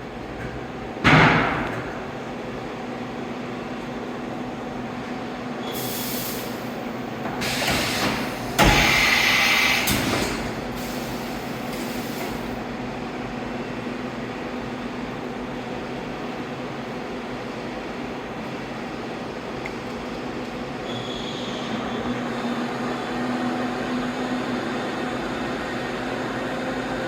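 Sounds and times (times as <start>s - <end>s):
air hiss: 5.7s - 6.8s, 7.4s - 12.6s
sharp machine clunk: 7.4s - 10.7s.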